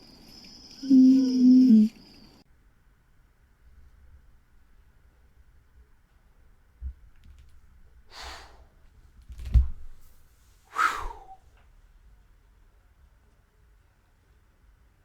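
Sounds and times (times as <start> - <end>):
thumps and rustling knocks: 9.2 - 10.2
breathy bursts: 10.7 - 11.4.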